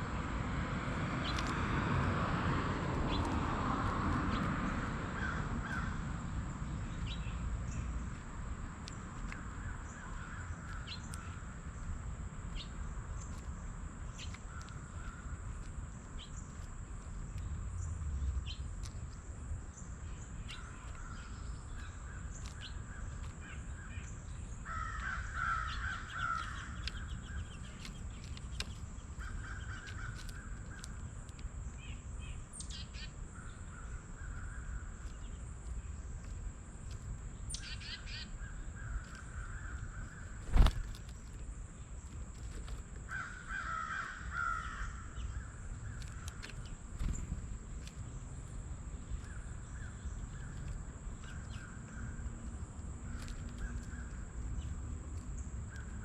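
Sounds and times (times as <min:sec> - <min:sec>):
small birds chirping: 0:00.0 - 0:01.8, 0:02.7 - 0:56.0
crows cawing: 0:05.1 - 0:06.1, 0:09.6 - 0:10.9, 0:14.5 - 0:15.4, 0:24.6 - 0:26.8, 0:29.2 - 0:30.5, 0:37.6 - 0:40.4, 0:43.1 - 0:45.5.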